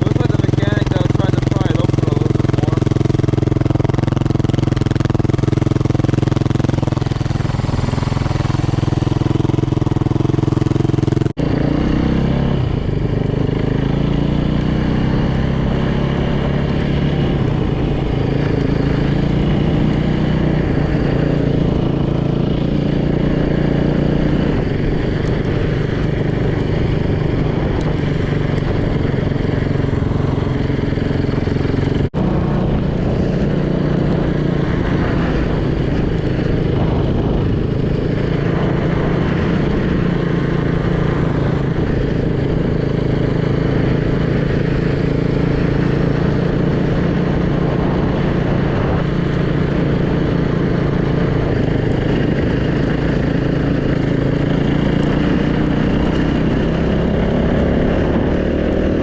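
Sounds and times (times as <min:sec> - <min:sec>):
dirt bike engine revving: 0:00.0 - 0:59.0.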